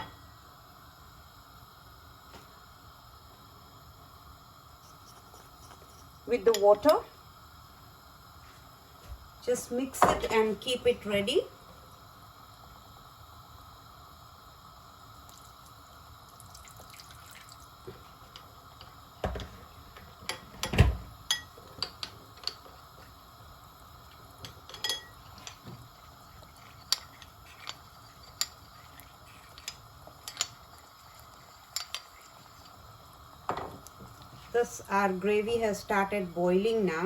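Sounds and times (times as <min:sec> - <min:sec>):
spoon clinking in a bowl: 0:24.7 - 0:25.6.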